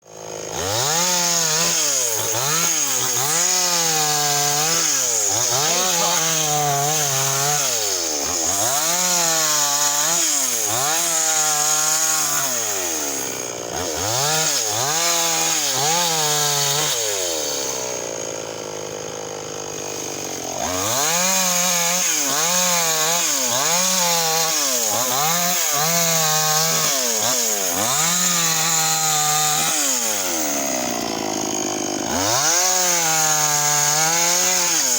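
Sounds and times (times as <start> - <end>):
chainsaw engine revving: 0.0 - 34.9.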